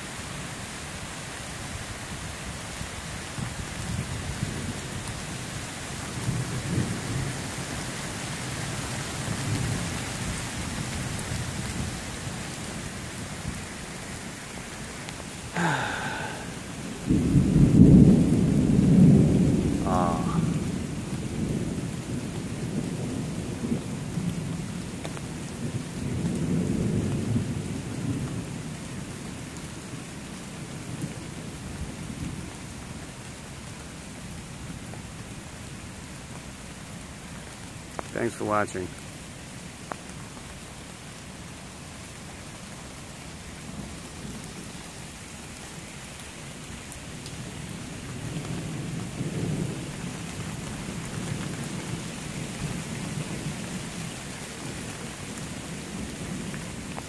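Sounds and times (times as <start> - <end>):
steady rain: 0.0 - 57.0
rolling thunder: 15.8 - 21.8.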